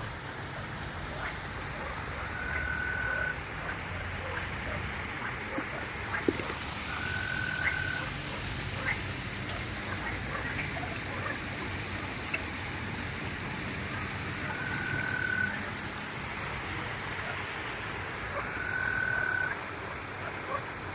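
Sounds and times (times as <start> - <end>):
frogs calling in chorus: 2.2 - 3.8, 5.6 - 8.2, 14.5 - 15.6, 18.4 - 19.7.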